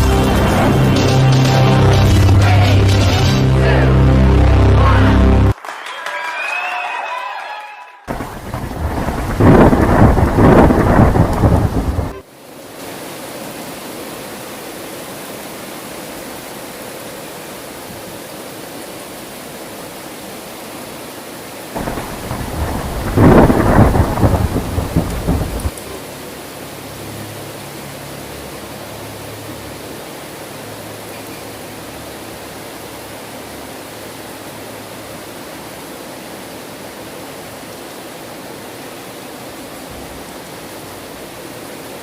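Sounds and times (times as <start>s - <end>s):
heavy rain: 0.0s - 5.7s, 8.0s - 42.0s
thunder rolling: 8.1s - 12.2s, 21.8s - 26.0s.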